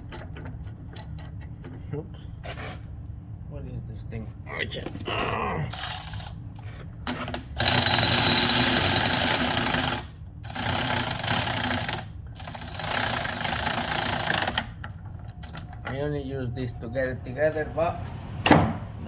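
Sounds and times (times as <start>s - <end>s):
impact wrench hammering: 18.5s - 19.0s.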